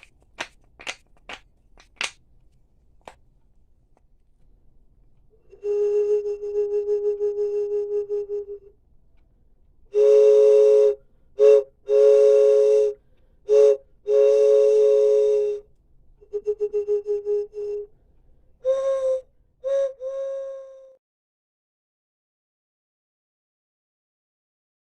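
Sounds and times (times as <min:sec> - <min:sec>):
train whistle blasts: 0:05.4 - 0:08.7, 0:09.9 - 0:17.9, 0:18.6 - 0:21.0.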